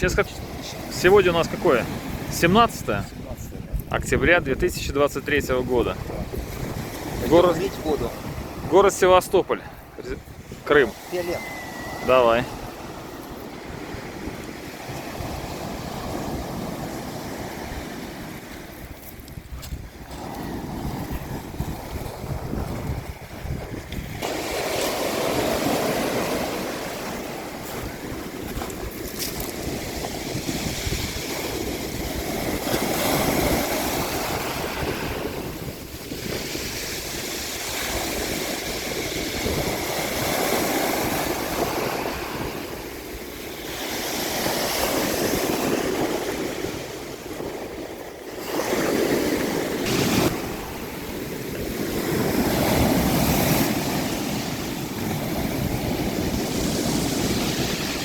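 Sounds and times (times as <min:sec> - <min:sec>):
sea surf washing in: 0:00.0 - 0:58.0
wind on microphone: 0:00.0 - 0:58.0.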